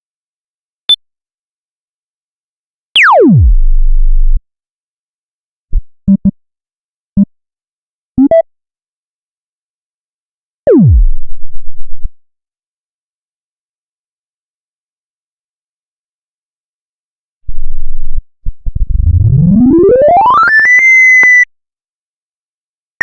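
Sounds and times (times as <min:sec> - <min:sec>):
stuttering low pulse: 0:17.6 - 0:20.1
falling synth pitch sweep: 0:18.9 - 0:20.9.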